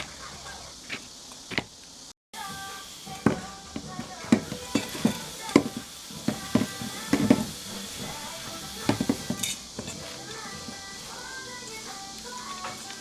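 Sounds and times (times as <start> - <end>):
light hiss: 0.0 - 13.0
faint background music: 2.4 - 13.0
kitchen utensil knocking: 3.2 - 8.2, 8.8 - 10.0.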